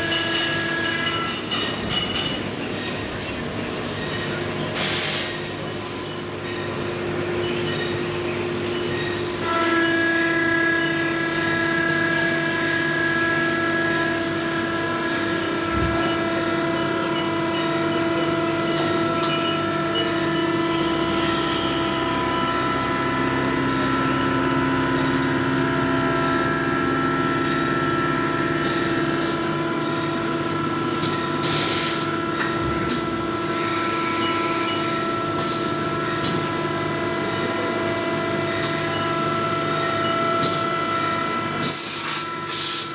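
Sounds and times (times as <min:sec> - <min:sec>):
machine whine: 0:00.0 - 0:42.9.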